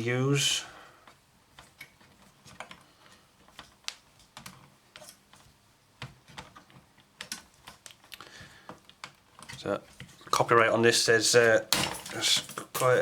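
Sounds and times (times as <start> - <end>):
plastic parts clicking and tapping: 1.0 - 10.4.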